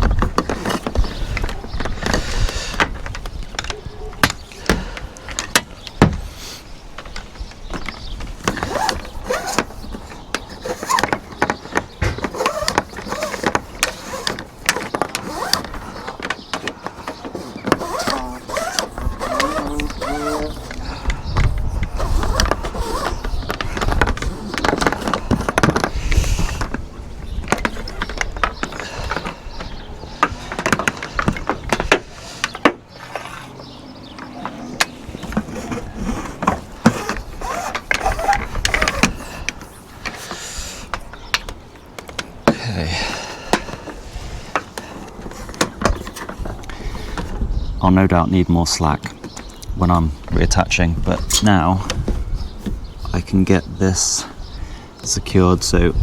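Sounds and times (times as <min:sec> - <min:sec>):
clicks and knocks of handling: 0:06.9 - 0:42.6.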